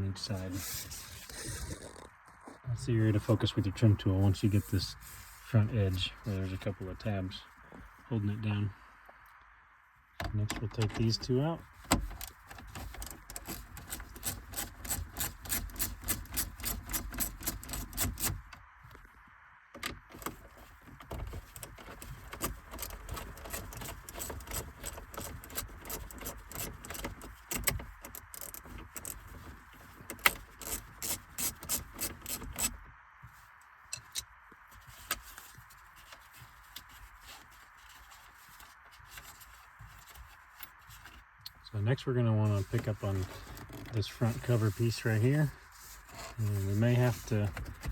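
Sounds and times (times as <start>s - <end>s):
faint handling noises: 2.6s - 47.9s.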